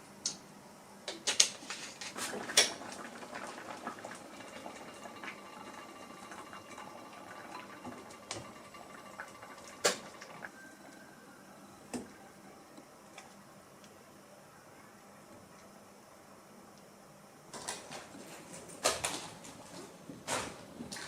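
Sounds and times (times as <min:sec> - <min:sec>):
soda fizzing: 0:01.9 - 0:10.5.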